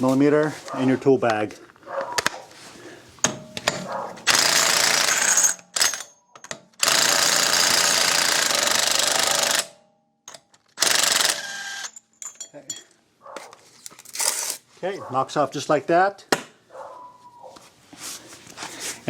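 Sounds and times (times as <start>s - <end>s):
impact wrench hammering: 3.2s - 12.4s.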